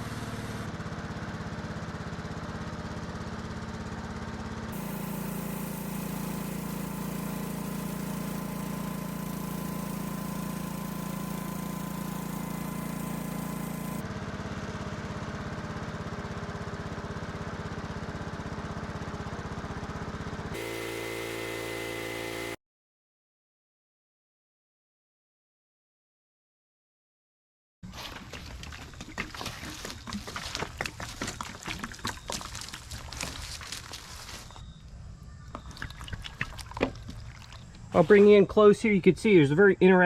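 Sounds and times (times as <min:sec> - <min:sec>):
sawmill engine running: 0:00.0 - 0:22.6, 0:27.9 - 0:34.6.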